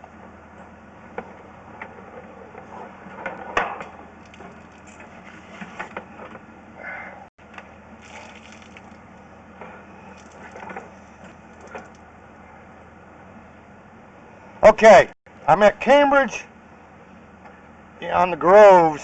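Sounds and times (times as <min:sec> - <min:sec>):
camera cable scraping in pipe: 0:04.9 - 0:06.2.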